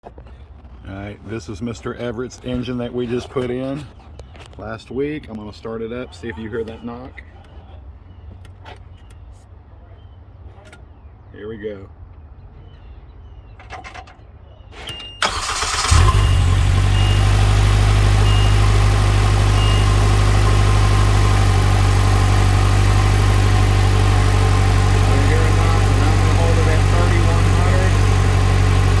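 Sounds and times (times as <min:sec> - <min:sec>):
car engine cranking and idling: 0:15.2 - 0:29.0
faint short beeps: 0:18.2 - 0:18.6, 0:19.5 - 0:20.0.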